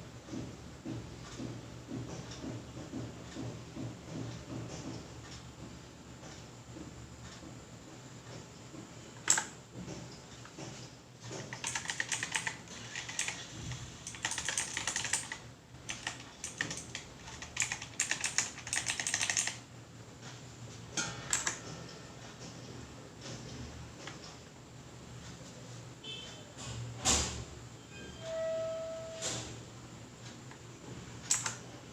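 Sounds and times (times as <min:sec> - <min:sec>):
clicky keyboard typing: 0:09.2 - 0:09.6, 0:11.4 - 0:19.6, 0:21.3 - 0:21.7, 0:31.2 - 0:31.7.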